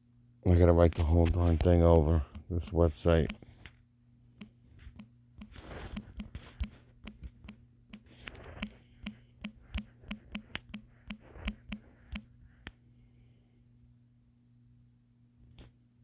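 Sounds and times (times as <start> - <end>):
steady low hum: 0.0 - 16.0
computer keyboard typing: 8.0 - 12.3.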